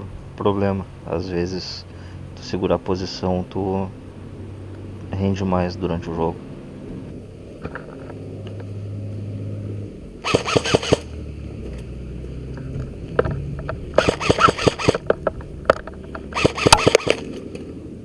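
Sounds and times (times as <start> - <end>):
airsoft guns firing clicking shots: 10.2 - 11.2, 14.0 - 15.2, 16.1 - 17.5.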